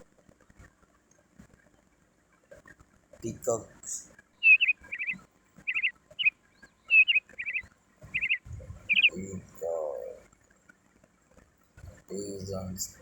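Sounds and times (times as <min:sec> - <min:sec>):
small bird chirping: 0:03.7 - 0:10.2
low bird call: 0:04.4 - 0:10.2.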